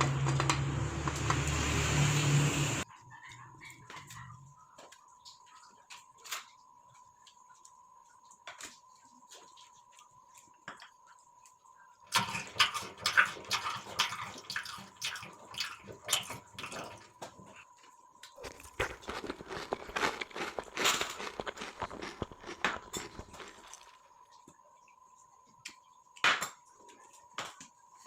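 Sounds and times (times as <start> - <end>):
wet mouth clicks and smacking: 18.3 - 24.1.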